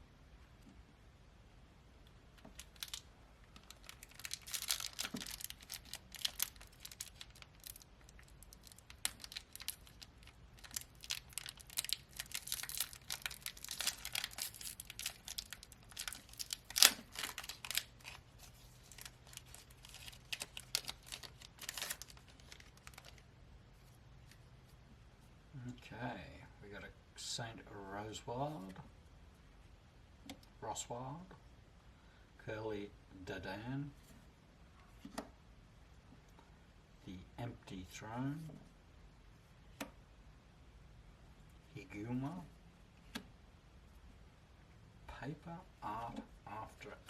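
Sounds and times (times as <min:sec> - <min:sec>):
wrapper tearing and crinkling: 0:02.4 - 0:23.2.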